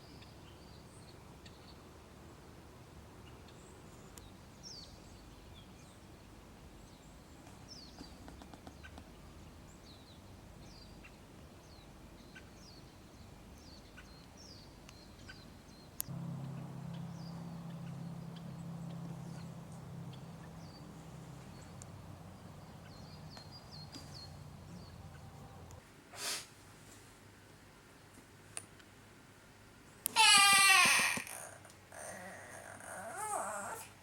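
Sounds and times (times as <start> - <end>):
small birds chirping: 3.3 - 25.8
steady low hum: 16.0 - 25.8.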